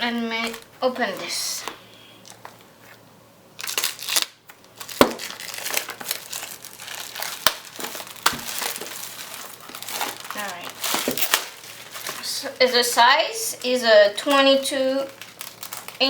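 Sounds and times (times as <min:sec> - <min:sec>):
packaging crinkling and rustling: 0:00.1 - 0:01.4, 0:03.6 - 0:16.0.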